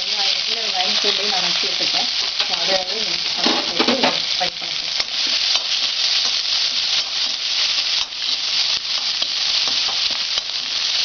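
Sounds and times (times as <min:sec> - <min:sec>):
onion sizzling in hot oil: 0:00.0 - 0:11.0.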